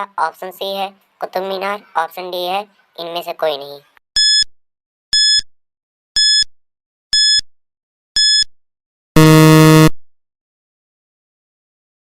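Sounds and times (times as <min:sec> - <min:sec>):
low buzzer: 0:09.2 - 0:10.0.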